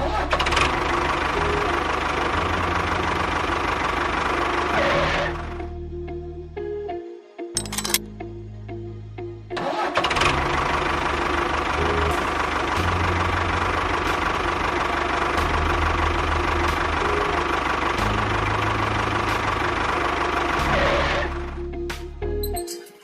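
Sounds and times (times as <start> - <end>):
background music: 4.4 - 23.0
small engine whining: 10.0 - 21.5.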